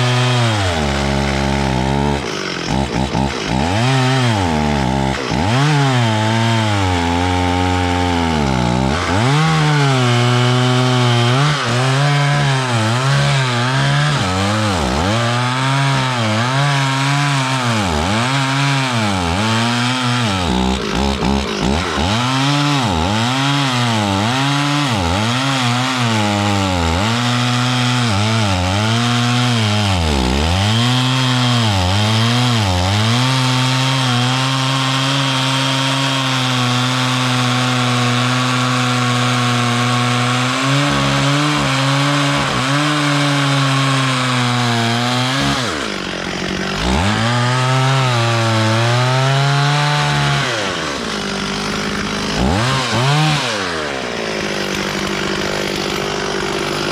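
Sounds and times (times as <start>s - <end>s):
chainsaw cutting wood: 0.0s - 56.9s.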